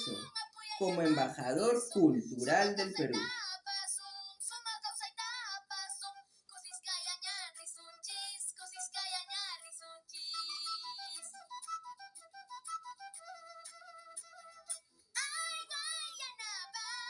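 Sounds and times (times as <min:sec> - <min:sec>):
high-pitched singing with vibrato: 0:00.0 - 0:04.6.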